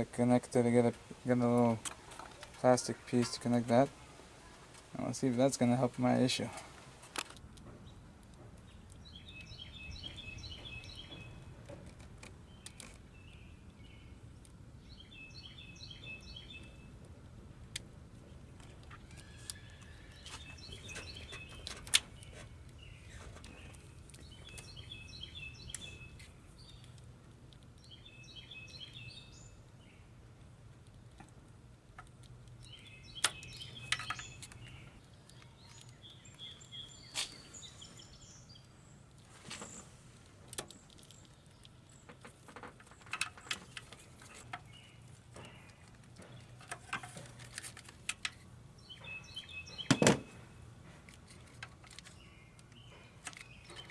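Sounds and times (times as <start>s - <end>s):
songbirds chirping: 0.0s - 53.9s
clicks and knocks of hand work: 40.4s - 49.1s.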